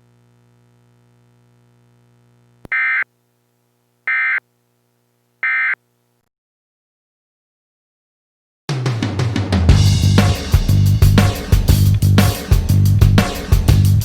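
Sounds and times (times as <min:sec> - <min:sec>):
buzzy digital data tone bursts: 0:02.7 - 0:03.0.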